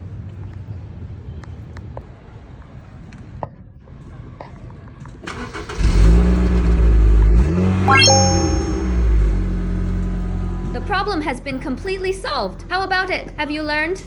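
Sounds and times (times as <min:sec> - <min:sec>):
rising tone: 0:07.9 - 0:09.3.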